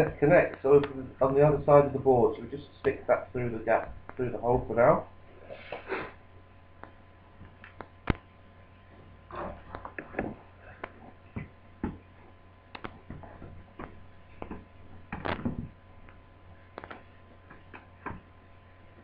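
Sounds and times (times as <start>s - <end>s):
steady low hum: 0.0s - 19.0s
hands clicking laptop parts: 16.8s - 18.3s.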